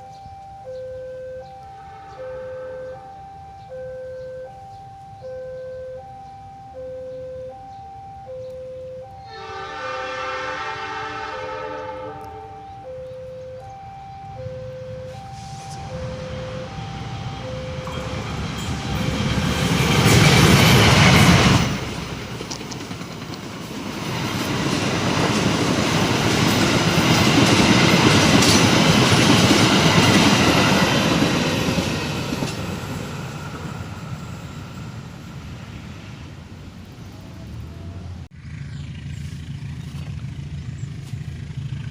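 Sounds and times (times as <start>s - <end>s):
two-tone warning beeps: 0.0s - 9.6s, 12.2s - 20.9s
train passing with rail clatter: 9.2s - 41.9s.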